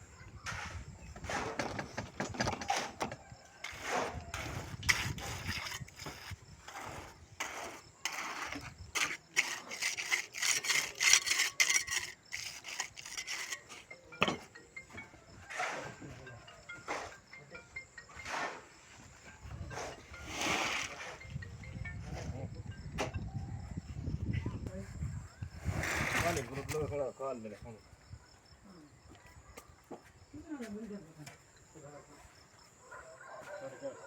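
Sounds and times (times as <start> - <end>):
scraping and rubbing strokes: 3.6 - 13.9, 18.2 - 21.5, 25.6 - 26.8.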